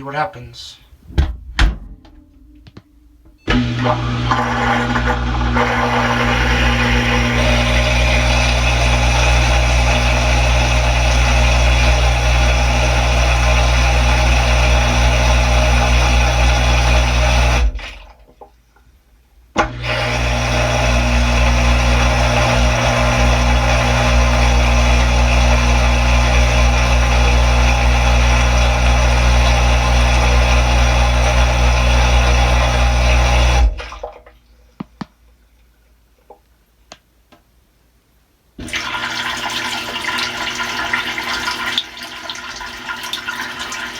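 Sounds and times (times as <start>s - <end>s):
dishwasher pump running: 3.4s - 18.3s, 19.6s - 34.2s, 38.6s - 43.9s.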